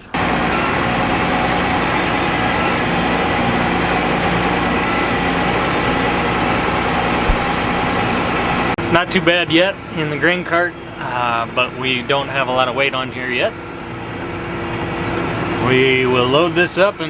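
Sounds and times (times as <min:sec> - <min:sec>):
diesel engine running: 0:00.0 - 0:17.0
low thud: 0:07.2 - 0:07.9.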